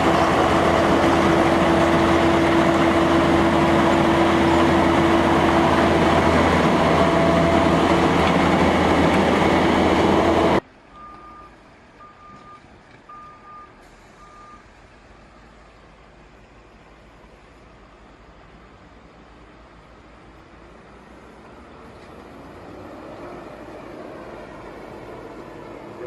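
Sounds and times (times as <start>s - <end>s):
heavy construction machinery: 0.0s - 26.0s
backup alarm beeping: 11.0s - 14.7s.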